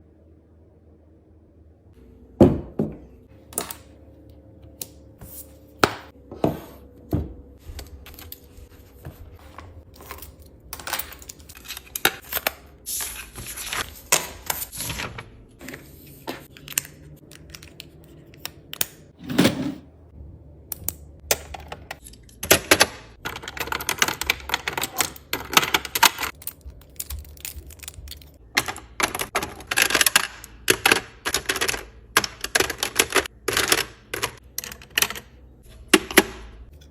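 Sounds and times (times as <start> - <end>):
desk items tapping and knocking: 2.4 - 3.0.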